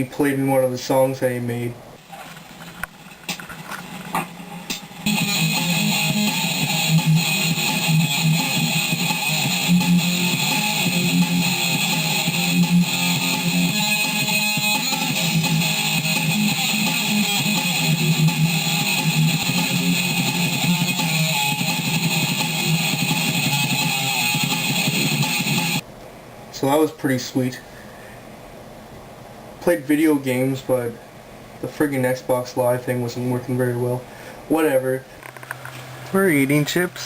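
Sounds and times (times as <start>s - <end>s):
electric guitar strumming: 4.7s - 25.8s.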